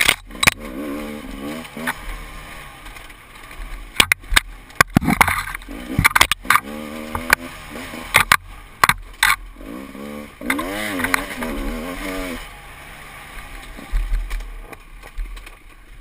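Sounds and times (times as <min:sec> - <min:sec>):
motorcycle engine revving: 0:00.0 - 0:16.0
sharp knocks and clatter: 0:01.5 - 0:09.5, 0:13.6 - 0:15.9.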